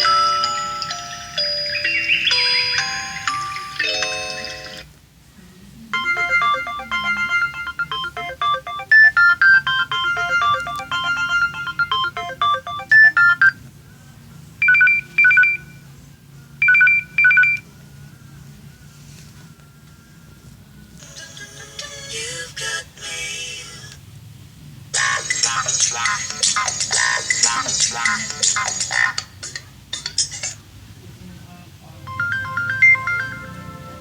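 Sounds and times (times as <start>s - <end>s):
polyphonic ringtone melody: 0.0s - 4.9s, 5.9s - 13.6s, 32.0s - 34.0s.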